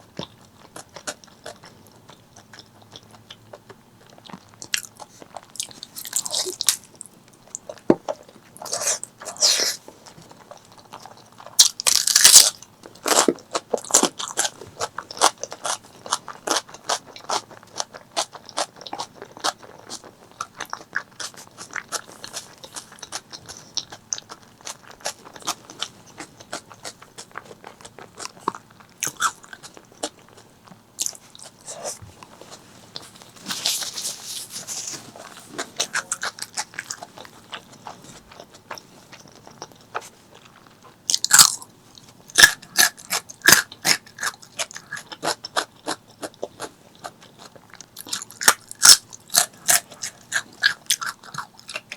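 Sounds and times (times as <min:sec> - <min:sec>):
chewing: 0:00.0 - 0:51.9
crunchy bites: 0:11.0 - 0:41.7, 0:42.3 - 0:46.7, 0:47.3 - 0:51.9.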